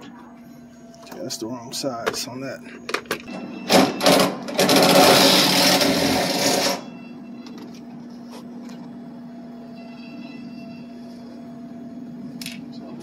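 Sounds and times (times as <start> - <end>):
harsh power tool noise: 3.9 - 6.8.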